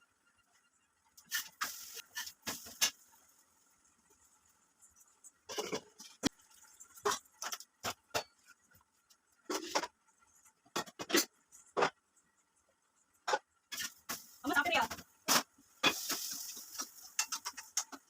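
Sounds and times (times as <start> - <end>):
kitchen utensils clinking: 15.3 - 18.0.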